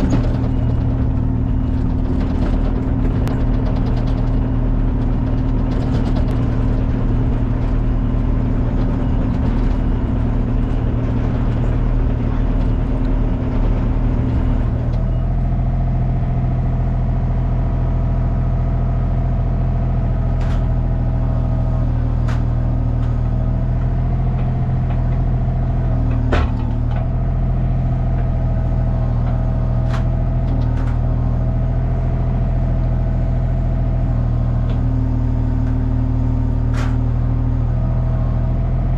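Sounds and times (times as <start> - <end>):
engine running: 0.0 - 38.9.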